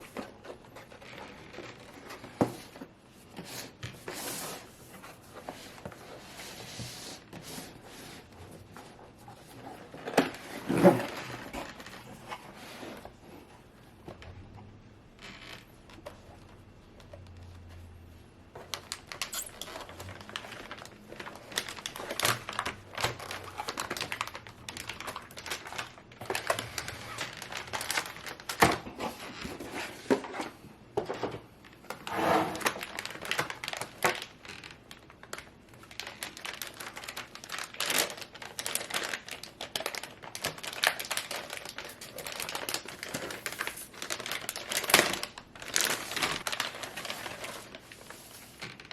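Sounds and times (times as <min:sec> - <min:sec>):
plastic packaging crinkling: 0:07.2 - 0:13.0, 0:18.6 - 0:30.4, 0:31.6 - 0:48.9.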